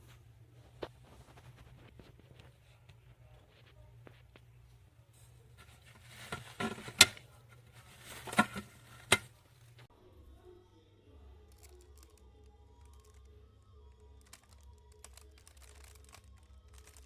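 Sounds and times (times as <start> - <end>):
handling rustling: 5.2 - 9.9, 14.2 - 17.0.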